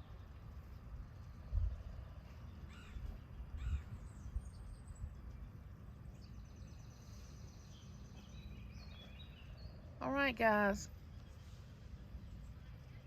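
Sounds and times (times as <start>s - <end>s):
wind rumble on microphone: 0.0s - 6.7s
birds calling: 1.2s - 13.0s.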